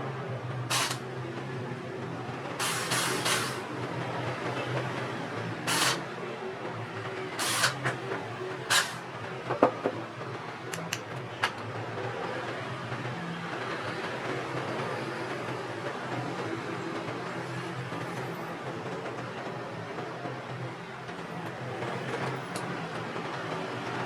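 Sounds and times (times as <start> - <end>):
sharp little clicks: 0.7 - 1.0, 7.4 - 8.0, 10.8 - 11.3
short scraping sounds: 0.7 - 1.0, 2.6 - 3.6, 5.7 - 6.0, 7.4 - 8.0, 8.7 - 9.0.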